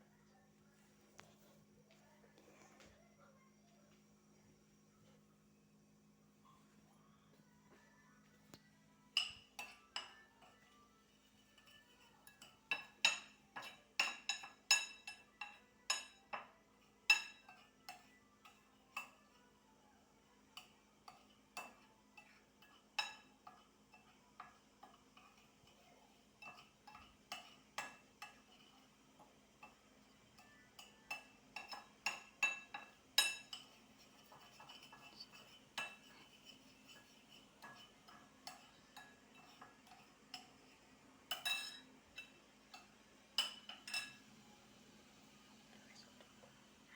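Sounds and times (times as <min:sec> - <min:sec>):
faint steady hum: 0:00.0 - 0:46.9
utensils clinking on crockery: 0:09.1 - 0:19.6, 0:20.5 - 0:44.3.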